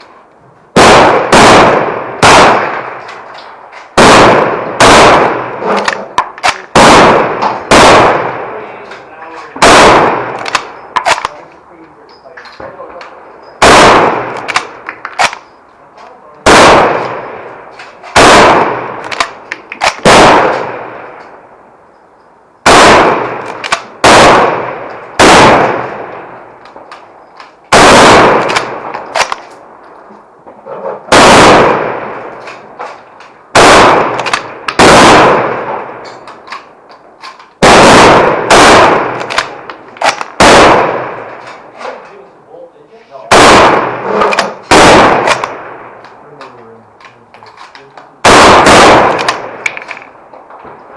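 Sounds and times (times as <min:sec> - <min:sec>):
rifle shots echoing: 0:00.7 - 0:08.8, 0:09.6 - 0:11.4, 0:13.6 - 0:15.4, 0:16.4 - 0:21.2, 0:22.6 - 0:26.6, 0:27.7 - 0:29.6, 0:31.1 - 0:32.7, 0:33.5 - 0:41.7, 0:43.3 - 0:46.1, 0:48.2 - 0:50.2.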